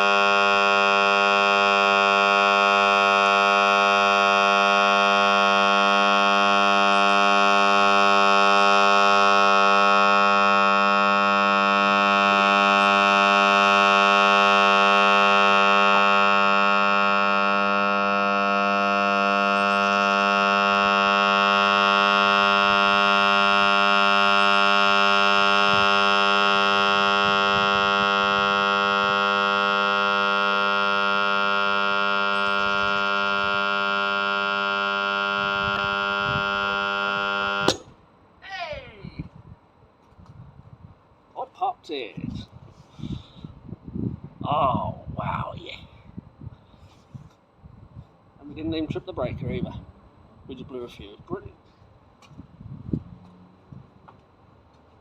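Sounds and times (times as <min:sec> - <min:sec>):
loud electrical motor buzz: 0:00.0 - 0:38.0.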